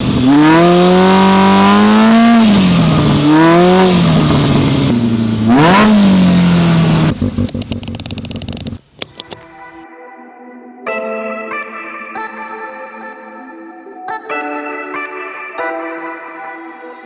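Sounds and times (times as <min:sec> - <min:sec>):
engine revving: 0:00.0 - 0:09.3
rapid sharp clicks: 0:07.1 - 0:09.5.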